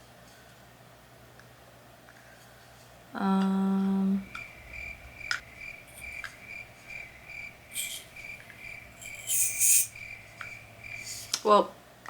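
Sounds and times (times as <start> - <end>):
cricket chirping: 4.0 - 11.5.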